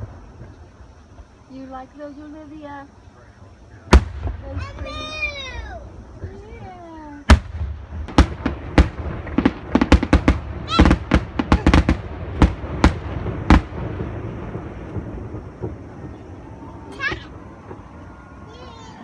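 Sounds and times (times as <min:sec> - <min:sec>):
fireworks bangs: 0:00.0 - 0:19.0
rumbling echo: 0:02.9 - 0:18.8.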